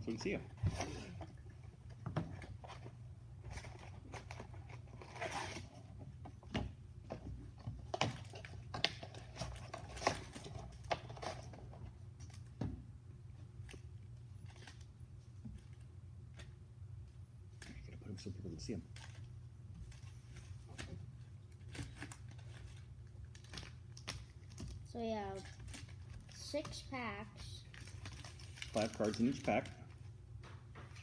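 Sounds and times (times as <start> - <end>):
low steady hum: 0.0 - 31.0
card packs crinkling and tapping: 6.2 - 12.6, 19.0 - 27.0, 27.6 - 31.0.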